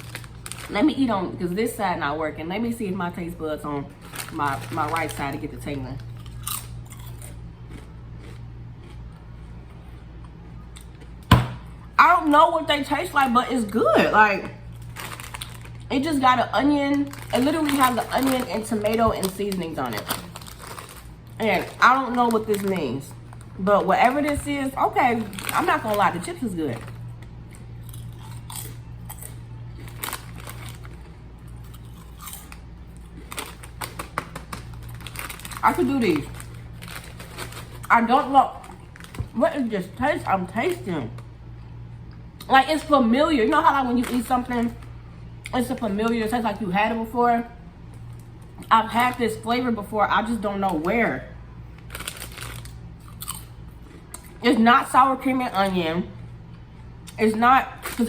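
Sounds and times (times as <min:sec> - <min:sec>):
low electrical hum: 0:00.0 - 0:58.0
chewing potato chips: 0:04.0 - 0:11.2, 0:14.6 - 0:16.3, 0:16.9 - 0:39.4, 0:51.8 - 0:54.5.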